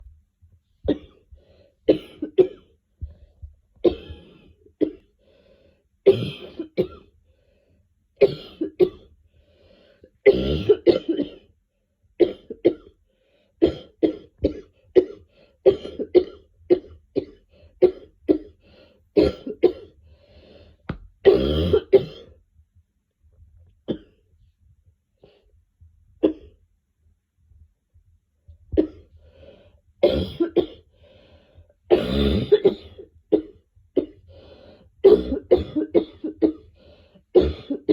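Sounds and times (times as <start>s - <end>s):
woman coughing: 1.9s - 2.6s, 3.8s - 5.0s, 6.1s - 7.0s, 8.2s - 9.0s, 10.3s - 11.4s, 19.2s - 19.9s, 21.3s - 22.3s, 30.0s - 30.8s, 31.9s - 34.2s, 35.0s - 36.7s, 37.4s - 37.9s.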